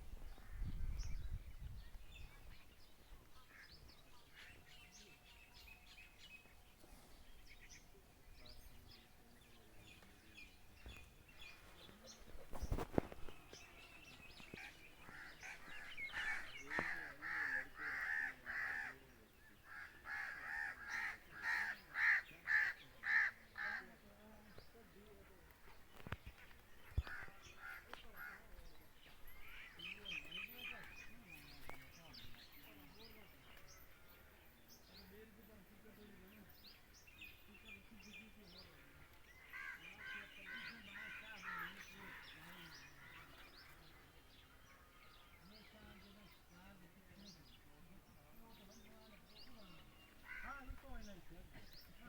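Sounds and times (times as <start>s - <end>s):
birds chirping: 0.0s - 52.0s
loud bird calling: 14.4s - 19.0s
crow cawing: 15.0s - 19.0s, 19.7s - 23.9s, 39.4s - 41.7s, 50.2s - 50.6s.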